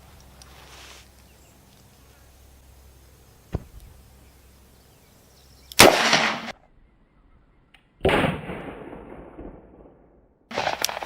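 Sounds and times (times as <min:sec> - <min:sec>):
revolver shots: 0:03.4 - 0:04.5.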